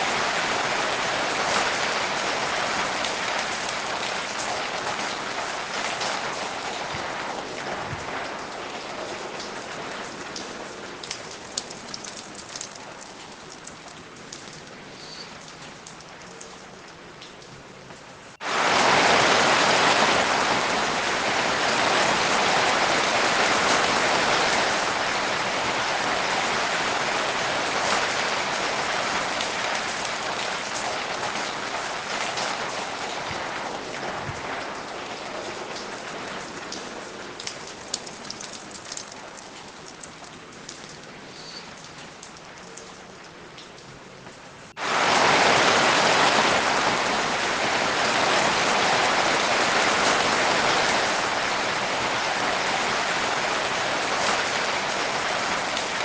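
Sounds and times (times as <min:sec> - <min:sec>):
steady rain: 0:00.0 - 0:56.0
water drip clicks: 0:10.3 - 0:18.1, 0:36.6 - 0:44.4.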